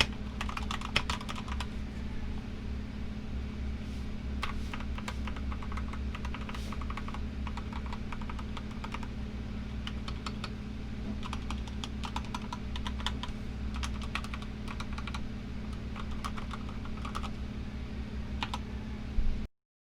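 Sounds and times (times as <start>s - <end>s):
typing on mechanical keyboard: 0.0s - 1.7s, 4.4s - 9.1s, 9.7s - 17.4s, 18.4s - 18.6s
air conditioner humming: 0.0s - 19.5s.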